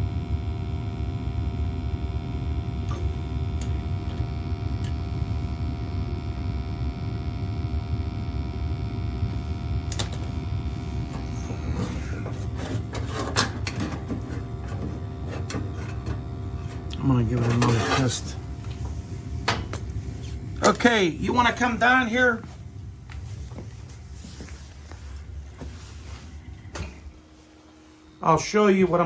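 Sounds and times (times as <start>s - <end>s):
boiler running with hum: 0.0s - 29.0s
clicks and handling noises: 12.2s - 18.8s.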